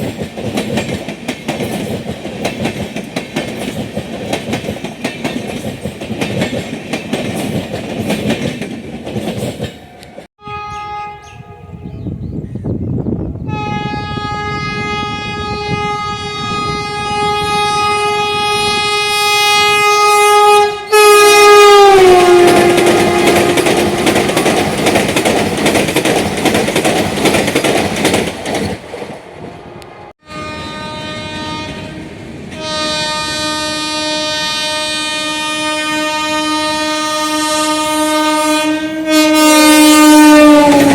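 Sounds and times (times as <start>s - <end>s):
train wheels clattering: 0.0s - 10.3s, 22.2s - 29.3s
locomotive horn blasts: 10.4s - 12.2s, 13.5s - 24.6s, 29.6s - 40.9s.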